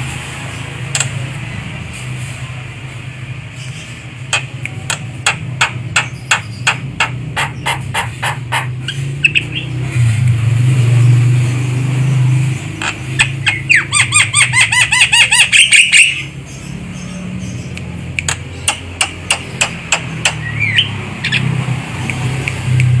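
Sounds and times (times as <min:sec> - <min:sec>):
sharp bird clicks: 0:01.0 - 0:01.2, 0:03.6 - 0:09.7, 0:17.4 - 0:23.0
myna chirping: 0:03.5 - 0:09.8, 0:12.8 - 0:22.6.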